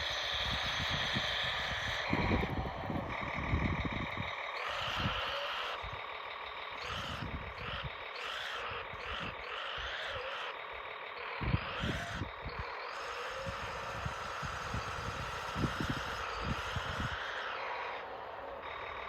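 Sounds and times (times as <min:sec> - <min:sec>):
low rumbles: 0:00.0 - 0:08.2
electric drive whining: 0:00.0 - 0:19.0.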